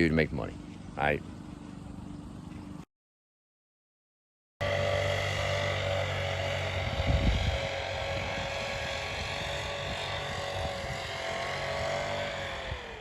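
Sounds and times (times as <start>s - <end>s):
leaf blower running: 4.6s - 13.0s.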